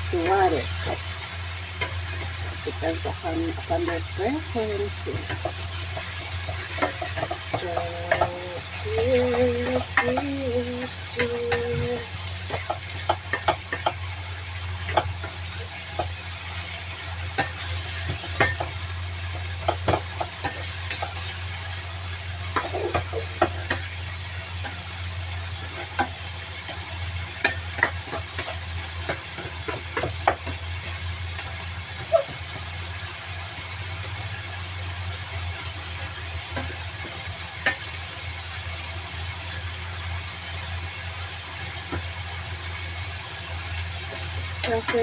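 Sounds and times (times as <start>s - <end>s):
chives sizzling in pan: 0.0s - 45.0s
spatula scraping and tapping pan: 0.2s - 2.6s, 5.0s - 21.8s, 22.4s - 33.0s, 35.6s - 38.1s.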